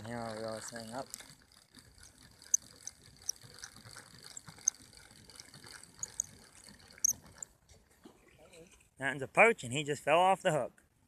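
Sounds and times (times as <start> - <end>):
fishing reel clicking: 0.0 - 7.5.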